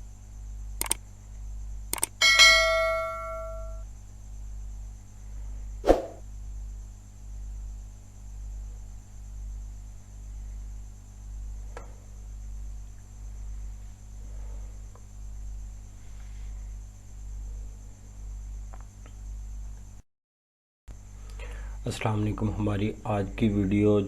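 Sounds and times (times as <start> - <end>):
steady electrical hum: 0.0 - 20.0, 20.9 - 24.0
bell-like ding: 2.2 - 3.8.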